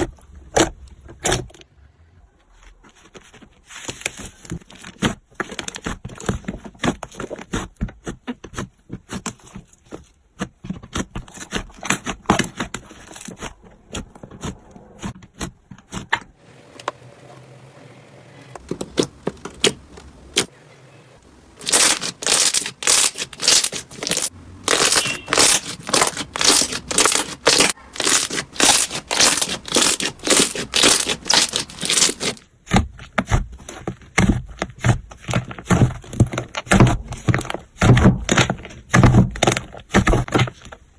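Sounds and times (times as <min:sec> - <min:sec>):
slime popping and crackling: 0:21.6 - 0:32.5.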